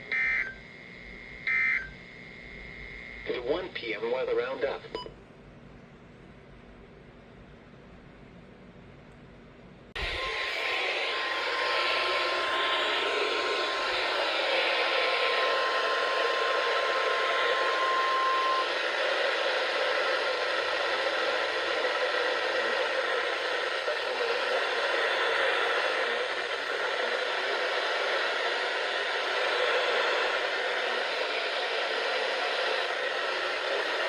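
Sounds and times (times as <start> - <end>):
steady tone: 10.0 - 34.0
radio static hiss: 11.3 - 34.0.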